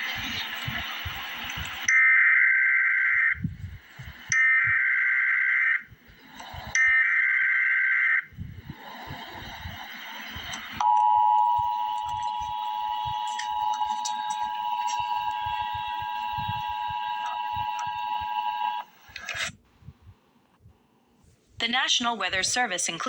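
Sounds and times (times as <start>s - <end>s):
two-tone attention signal: 10.8s - 18.8s
screechy digital data bursts: 11.5s - 18.9s.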